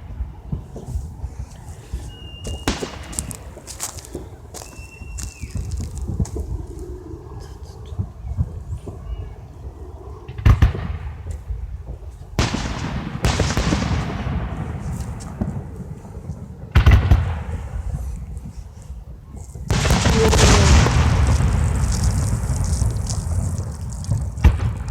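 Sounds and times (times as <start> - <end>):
fireworks booming: 2.4 - 6.6, 12.4 - 18.5, 19.6 - 24.9
dense noise: 19.7 - 24.9.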